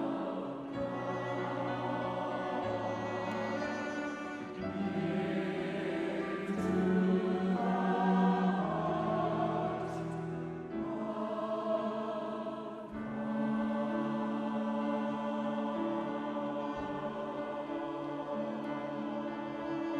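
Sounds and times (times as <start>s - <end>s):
choir singing held chords: 0.0s - 19.9s.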